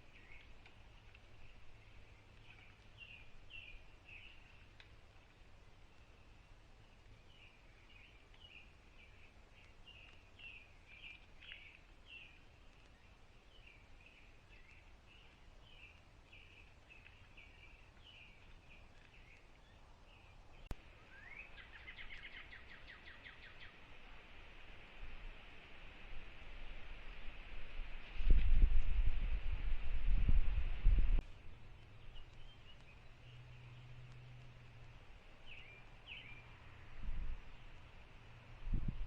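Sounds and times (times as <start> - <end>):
faint bird chirps: 1.3 - 23.8.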